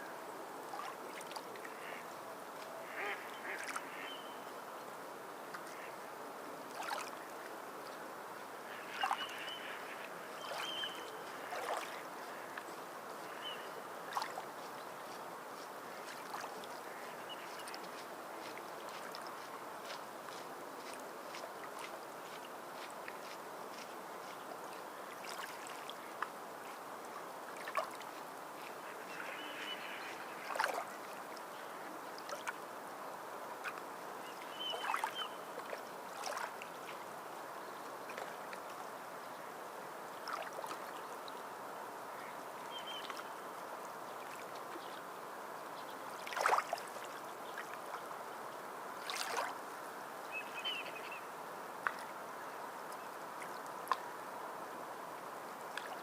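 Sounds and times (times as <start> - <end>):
sea water lapping and splashing: 0.6 - 4.3, 6.6 - 32.7, 33.5 - 37.4, 40.1 - 41.4, 42.1 - 45.0, 45.8 - 48.2, 48.9 - 52.2, 52.8 - 54.3, 55.1 - 56.0.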